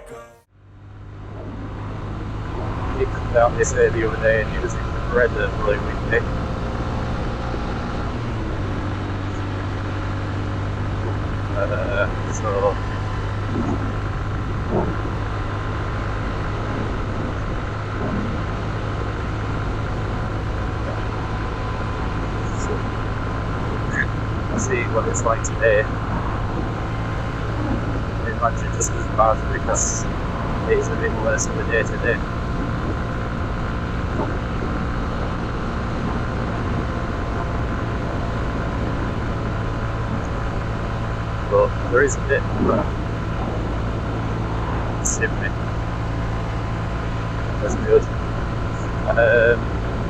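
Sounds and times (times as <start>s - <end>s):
wind and road noise: 0.6s - 50.0s
motorcycle engine running: 0.8s - 50.0s.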